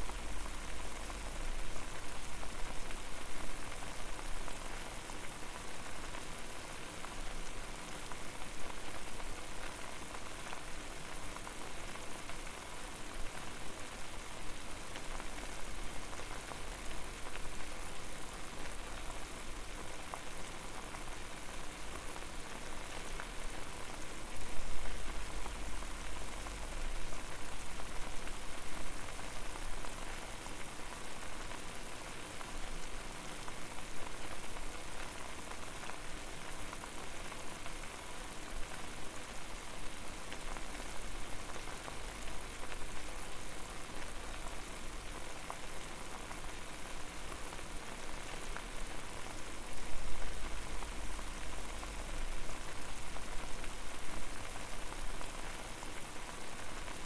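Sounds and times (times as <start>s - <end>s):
water boiling and bubbling: 0.0s - 57.0s.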